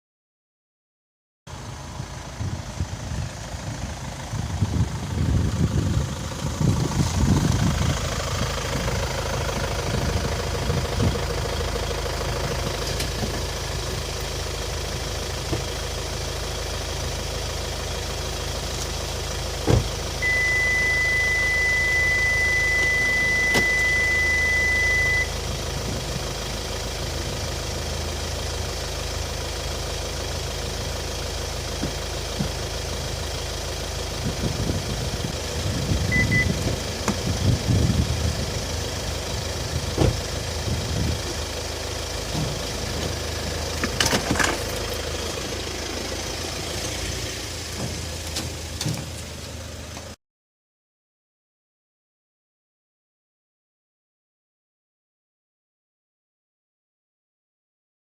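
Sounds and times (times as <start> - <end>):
car engine idling: 1.5 - 50.2
steady high beep: 20.2 - 25.4, 36.1 - 36.6.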